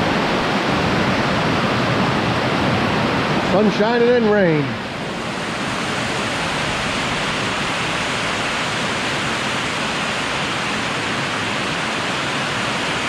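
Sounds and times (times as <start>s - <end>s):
heavy rain on a truck: 4.5s - 13.0s.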